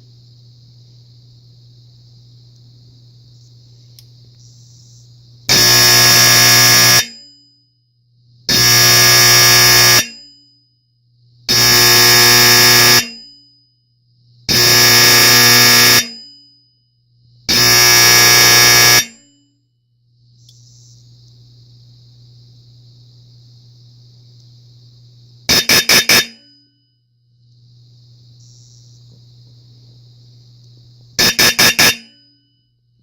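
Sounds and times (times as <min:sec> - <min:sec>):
faint steady hum: 0:00.0 - 0:33.0
fire alarm horn buzzing: 0:05.5 - 0:07.3, 0:08.5 - 0:10.3, 0:11.5 - 0:13.3, 0:14.5 - 0:16.4, 0:17.5 - 0:19.4, 0:25.5 - 0:26.7, 0:31.2 - 0:32.4.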